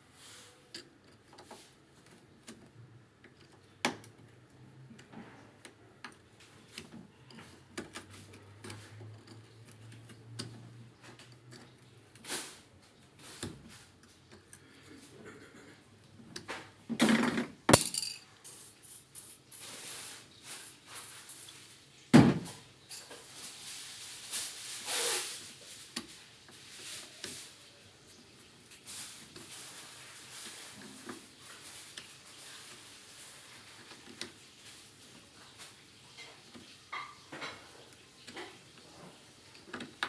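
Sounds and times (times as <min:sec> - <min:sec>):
hard objects clattering: 0:17.0 - 0:19.6.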